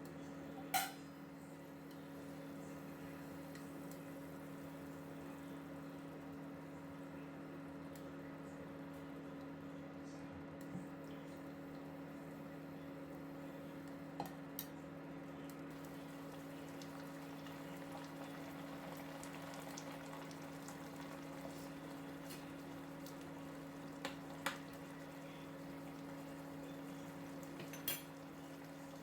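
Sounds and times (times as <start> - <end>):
low steady hum: 10.6 - 29.0
chicken sizzling in a pan: 15.7 - 29.0.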